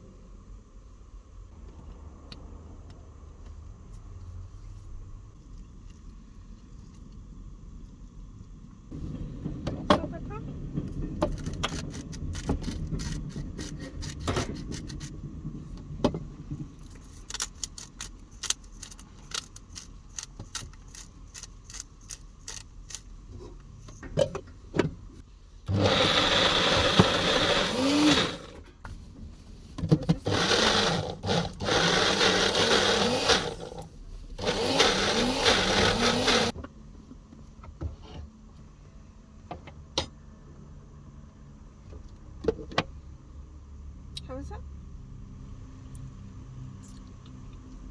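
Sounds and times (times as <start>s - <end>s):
blender motor whirring: 25.7s - 28.6s, 30.2s - 36.6s.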